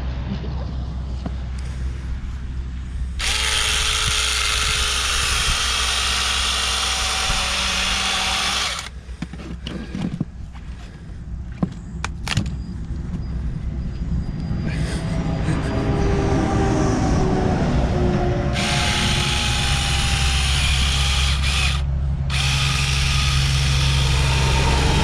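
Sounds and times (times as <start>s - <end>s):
small chainsaw cutting pumpkin: 3.2s - 9.0s, 18.6s - 25.0s.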